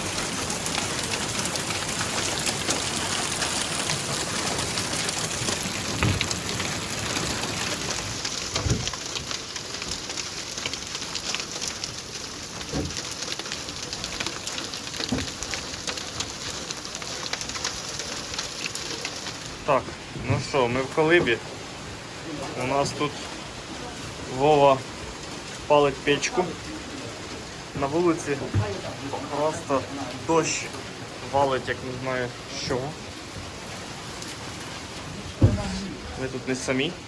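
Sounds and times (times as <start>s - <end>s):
hail and heavy rain: 0.0s - 37.0s
dull low thumps: 8.5s - 9.0s, 35.3s - 35.9s.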